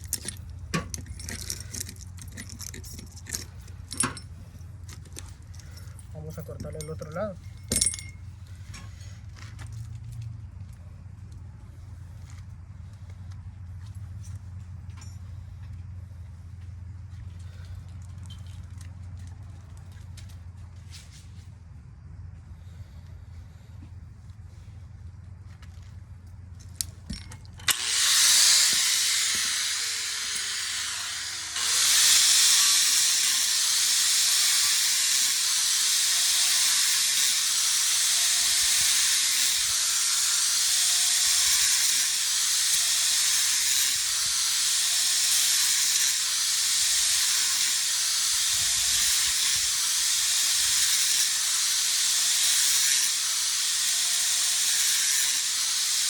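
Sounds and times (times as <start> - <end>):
cutting tool hissing through metal: 27.7 - 56.0.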